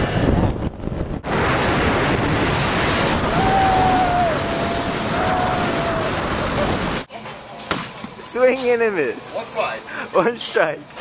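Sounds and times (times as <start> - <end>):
wind rushing over microphone: 0.0 - 7.1.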